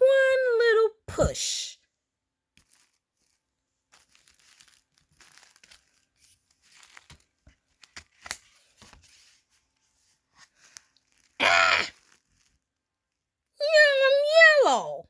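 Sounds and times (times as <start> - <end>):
book pages rustling: 2.5 - 12.8.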